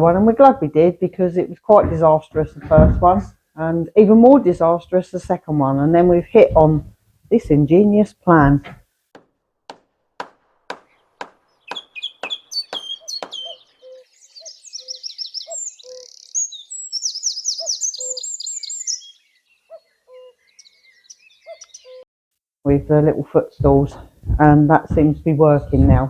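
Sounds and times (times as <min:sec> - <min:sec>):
evenly spaced knocks: 0:01.8 - 0:03.3, 0:05.2 - 0:07.8, 0:22.7 - 0:26.0
songbirds chirping trills: 0:11.5 - 0:22.0.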